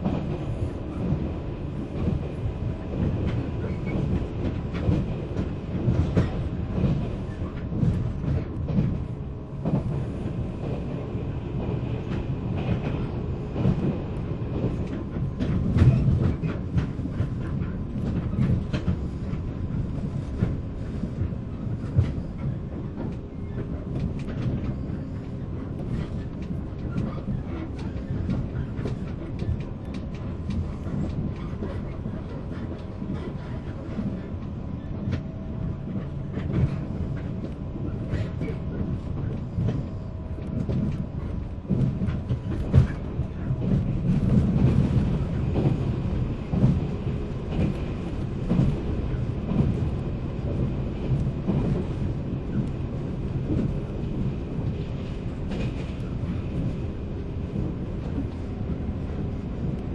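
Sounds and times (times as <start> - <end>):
rail joint clicks: 0.0 - 59.9
train wheels rumbling on rail: 0.0 - 59.9.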